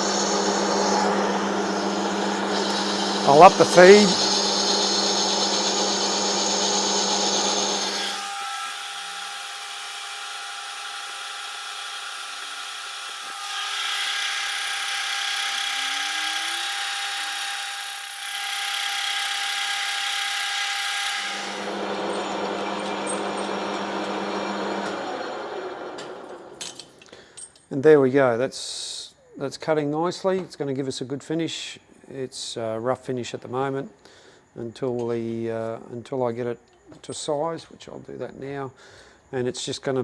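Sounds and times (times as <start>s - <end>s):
deep machine hum: 0.0s - 8.0s, 21.3s - 26.6s
metal lathe whining: 0.0s - 26.8s
boring bar cutting metal: 0.0s - 27.0s.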